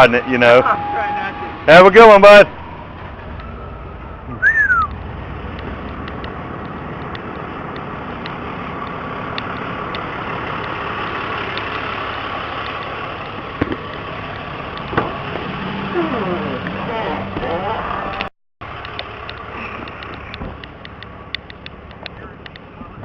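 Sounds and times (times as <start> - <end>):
short falling whistle: 4.3 - 4.9
engine idling: 4.9 - 23.0
faint light ticks: 18.8 - 22.7.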